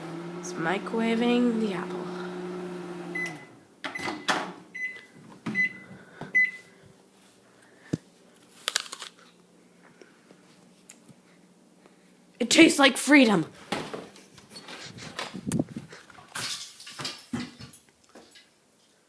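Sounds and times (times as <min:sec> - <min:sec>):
microwave oven humming: 0:00.0 - 0:07.0.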